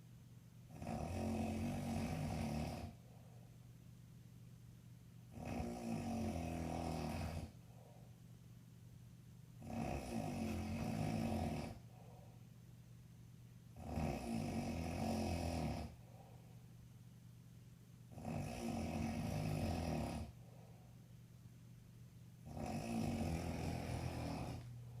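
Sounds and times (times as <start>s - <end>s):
man snoring: 0.7s - 3.0s, 5.3s - 7.6s, 9.6s - 11.8s, 13.8s - 16.0s, 18.1s - 20.4s, 22.4s - 24.7s.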